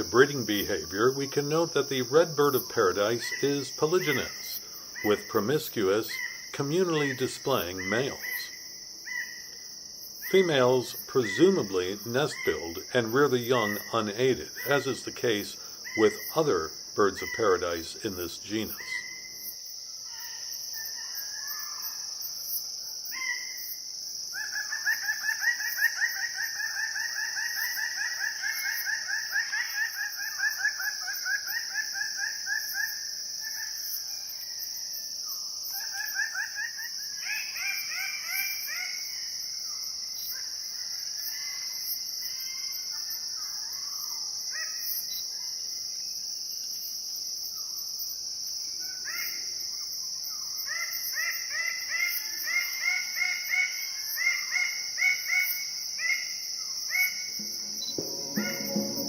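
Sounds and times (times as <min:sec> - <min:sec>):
high-pitched insect drone: 0:56.9 - 0:59.0.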